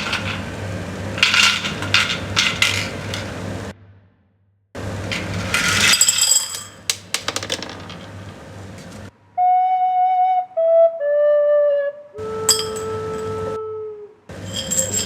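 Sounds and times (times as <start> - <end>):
recorder playing held notes: 9.4 - 14.2.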